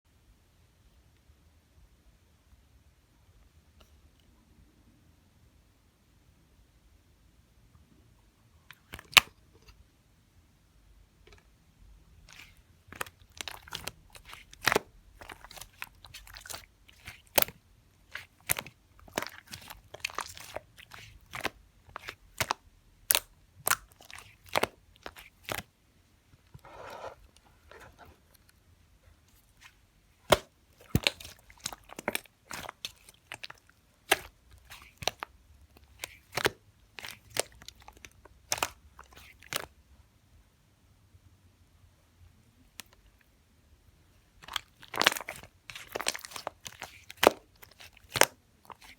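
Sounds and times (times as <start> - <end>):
slime crackling and popping: 12.3 - 25.7, 29.5 - 39.7, 44.4 - 48.9.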